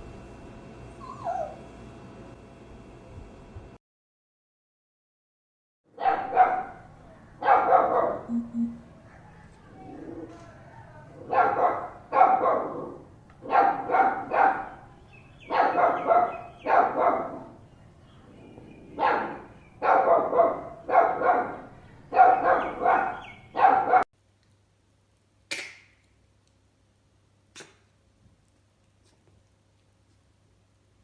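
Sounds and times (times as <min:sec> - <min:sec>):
puppy barking: 0:05.9 - 0:17.6, 0:19.0 - 0:24.1.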